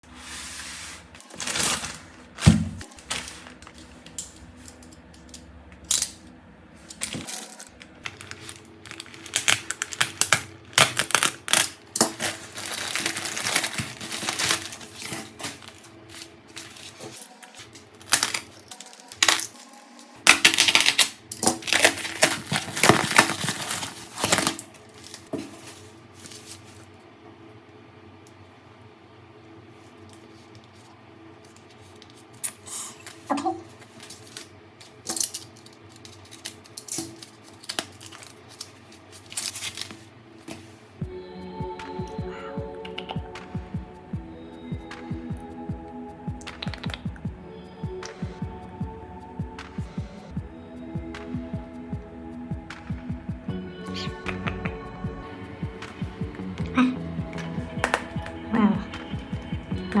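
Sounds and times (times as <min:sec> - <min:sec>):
scraping and rustling: 0:00.0 - 0:06.1, 0:06.8 - 0:27.0
small objects clicking and clinking: 0:06.9 - 0:25.3.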